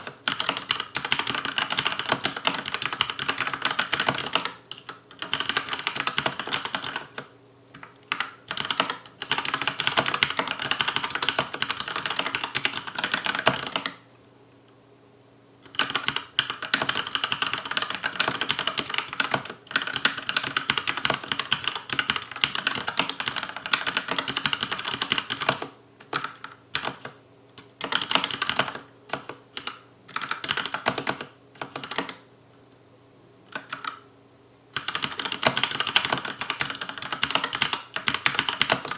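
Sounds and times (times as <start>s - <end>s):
mechanical keyboard typing: 0.0s - 14.0s, 15.7s - 32.2s, 33.5s - 34.0s, 34.8s - 38.9s.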